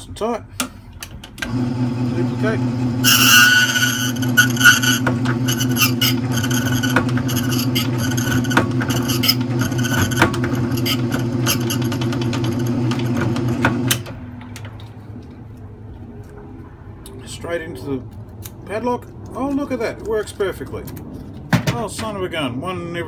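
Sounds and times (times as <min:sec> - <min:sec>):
motor hum: 0:01.4 - 0:14.8
key cutter scraping metal: 0:02.4 - 0:14.0.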